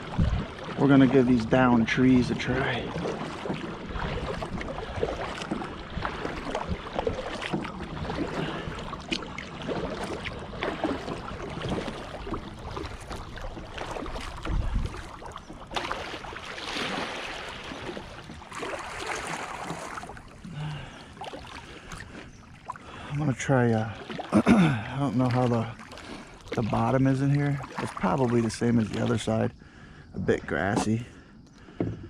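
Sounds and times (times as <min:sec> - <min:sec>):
wind rumble on microphone: 0:00.0 - 0:03.2, 0:10.3 - 0:15.5
paddle splashes: 0:00.0 - 0:32.0
knocks against kayak hull: 0:31.8 - 0:32.0.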